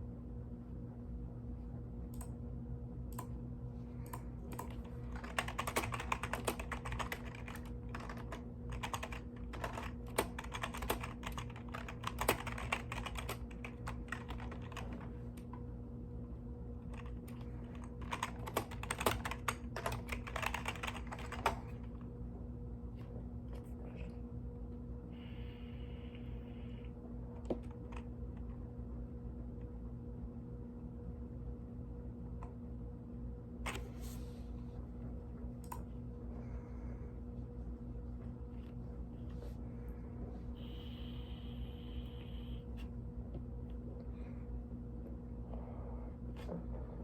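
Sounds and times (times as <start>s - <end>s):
steady low hum: 0.0s - 47.0s
mechanical keyboard typing: 4.5s - 15.1s, 16.9s - 21.8s.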